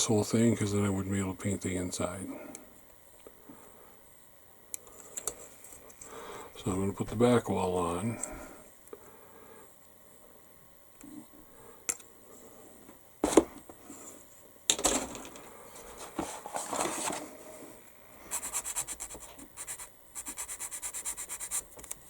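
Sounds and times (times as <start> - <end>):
sanding plastic part: 18.3 - 21.9.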